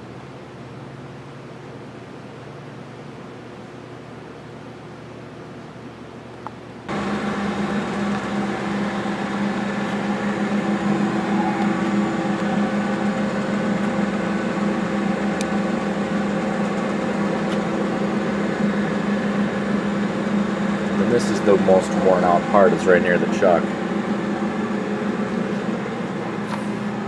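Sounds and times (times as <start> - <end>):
lathe running with gear whine: 6.9 - 27.0.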